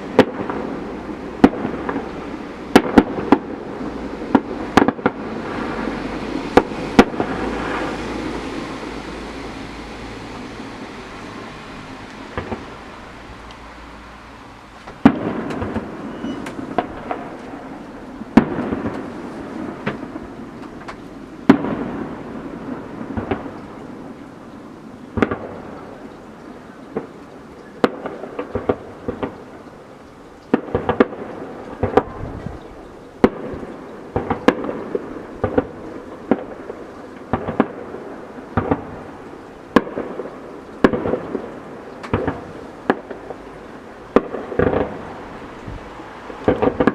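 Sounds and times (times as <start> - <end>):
crackling pops: 0.0 - 0.7, 1.4 - 3.7, 4.3 - 5.7, 12.0 - 13.7, 14.8 - 24.3, 25.0 - 46.9
firework shells bursting: 12.3 - 12.8, 14.8 - 22.1, 33.2 - 37.9, 38.5 - 43.4.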